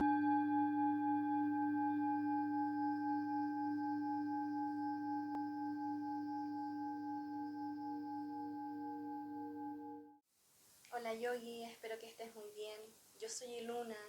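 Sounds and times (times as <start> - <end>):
singing bowl ringing: 0.0 - 10.2.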